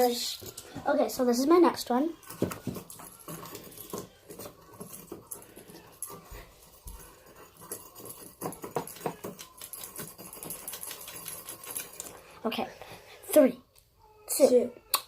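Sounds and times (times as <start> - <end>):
small metal chain clinking: 0.0 - 12.4.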